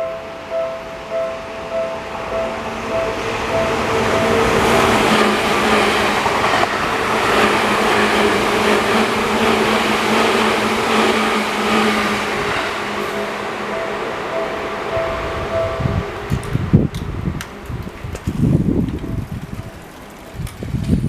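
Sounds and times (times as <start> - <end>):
crossing warning bell: 0.0 - 16.9, 18.4 - 21.0
train wheels rushing past: 0.0 - 21.0.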